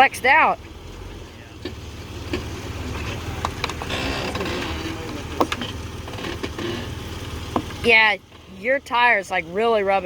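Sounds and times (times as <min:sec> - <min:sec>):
engine running under load: 0:00.0 - 0:10.0
tire rubbing on fender: 0:00.6 - 0:09.8
creaks and clicks from body: 0:03.4 - 0:07.0.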